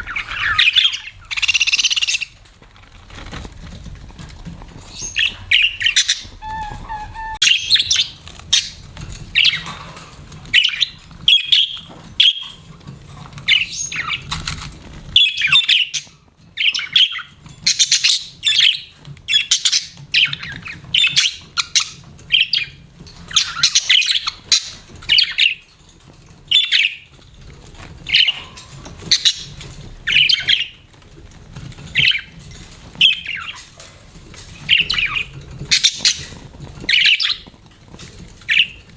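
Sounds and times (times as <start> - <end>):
budgerigars chirping and squawking: 0.0 - 2.5, 4.8 - 27.2, 27.9 - 30.9, 31.6 - 38.9.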